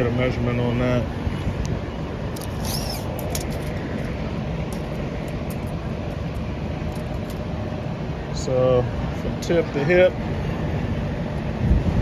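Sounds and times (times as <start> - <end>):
low rumbling machine noise: 0.0 - 12.0.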